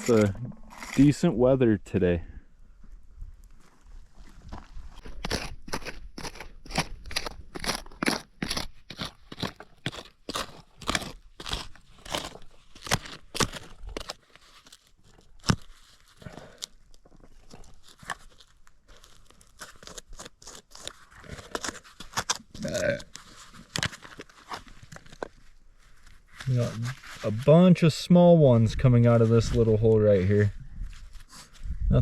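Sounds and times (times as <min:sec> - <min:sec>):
tool digging into dirt: 0:00.0 - 0:01.3, 0:04.9 - 0:16.8, 0:17.4 - 0:25.3.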